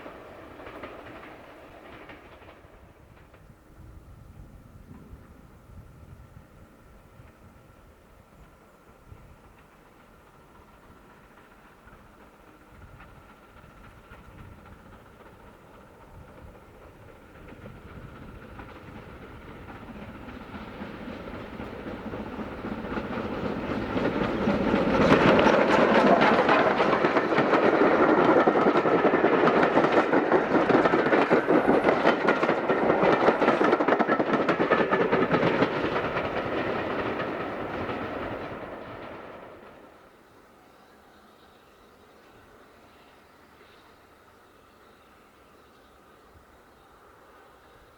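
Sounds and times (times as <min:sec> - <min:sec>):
steam train passing: 0:00.0 - 0:47.9
wheels clattering over rails: 0:11.9 - 0:40.0.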